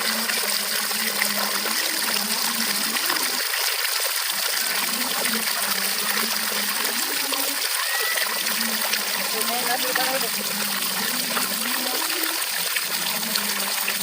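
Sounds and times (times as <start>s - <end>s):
water flowing and splashing: 0.0s - 14.0s.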